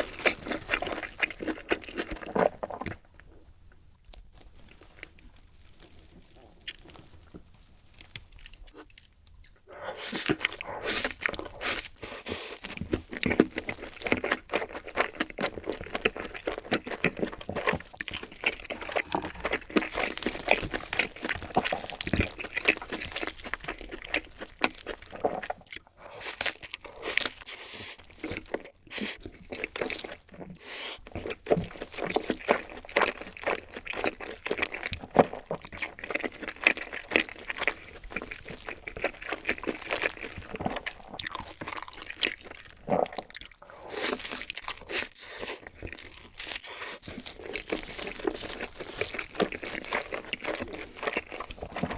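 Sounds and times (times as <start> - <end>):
crunchy bites and chewing: 0.0 - 3.2, 4.0 - 51.9.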